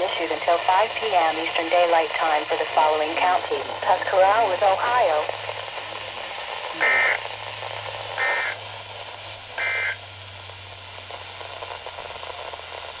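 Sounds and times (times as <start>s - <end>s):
radio static: 0.0s - 13.0s
screeching data bursts: 6.6s - 7.3s, 8.0s - 8.7s, 9.5s - 10.2s.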